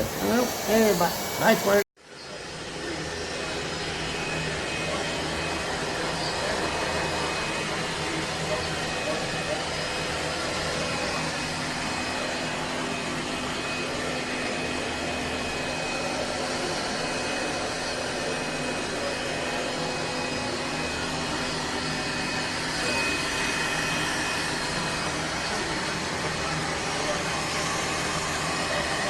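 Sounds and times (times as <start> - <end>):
robot vacuum whirring: 0.0 - 1.8.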